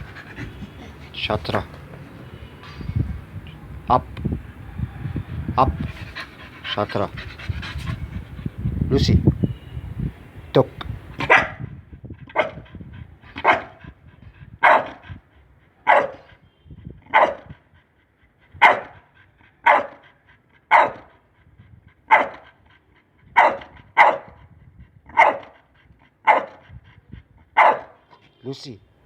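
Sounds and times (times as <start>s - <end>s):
dog barking: 11.2s - 11.6s, 12.3s - 12.6s, 13.4s - 13.8s, 14.6s - 15.0s, 15.8s - 16.3s, 17.1s - 17.5s, 18.6s - 19.0s, 19.6s - 20.0s, 20.7s - 21.1s, 22.1s - 22.4s, 23.4s - 24.4s, 25.1s - 25.6s, 26.2s - 26.6s, 27.6s - 28.2s.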